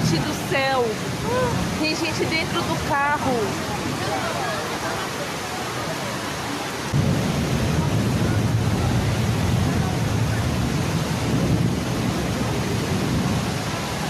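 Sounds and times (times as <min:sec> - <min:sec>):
heavy rain and floodwater rushing: 0:00.0 - 0:14.0
deep rumble: 0:07.0 - 0:13.6.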